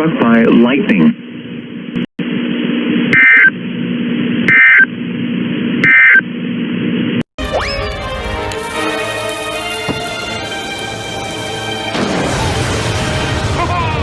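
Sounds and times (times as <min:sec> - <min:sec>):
digital data tones harsh buzz: 0:03.1 - 0:03.6.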